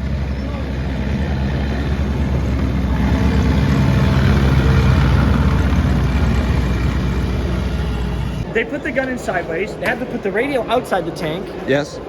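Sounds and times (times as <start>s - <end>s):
heavy vehicle engine passing: 0.0s - 8.5s.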